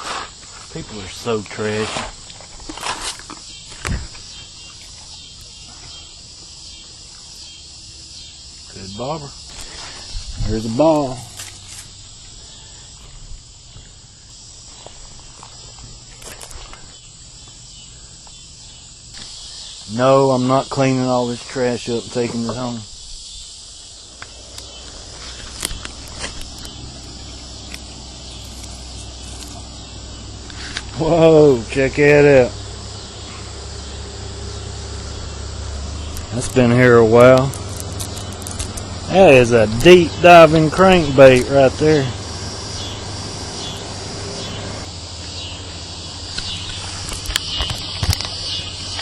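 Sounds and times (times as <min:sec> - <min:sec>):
crickets and insects chirping: 0:00.0 - 0:49.0
steady low hum: 0:00.0 - 0:49.0
low steady rumble: 0:23.9 - 0:49.0.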